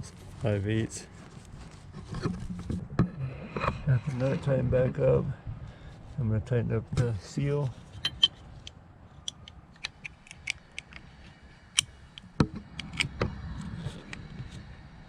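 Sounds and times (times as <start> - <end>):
light metallic clicks and clinks: 8.0 - 11.0.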